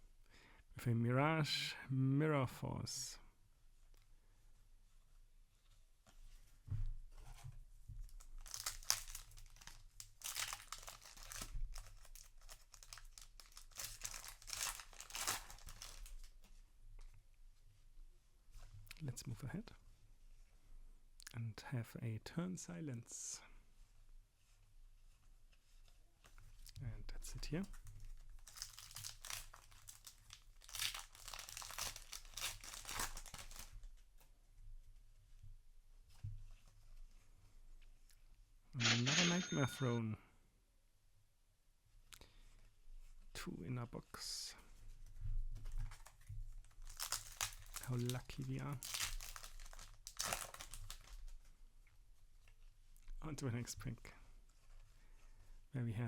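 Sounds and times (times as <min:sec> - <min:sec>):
foil wrapper tearing and crinkling: 0:08.2 - 0:16.3, 0:28.0 - 0:33.7, 0:45.9 - 0:51.4.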